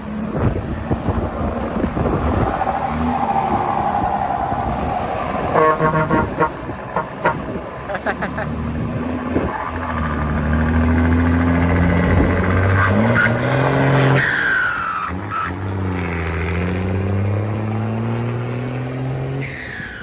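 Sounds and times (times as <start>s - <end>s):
diesel truck engine revving: 0.0s - 19.5s
high turbo whistle: 2.3s - 7.5s.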